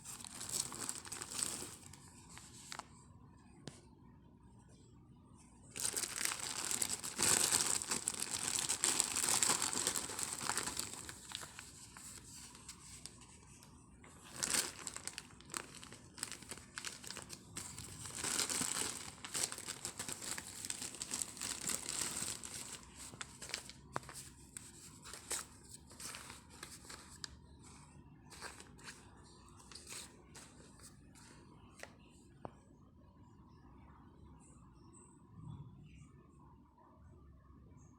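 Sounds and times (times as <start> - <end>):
packaging crinkling and rustling: 0.0 - 2.9, 5.7 - 31.9.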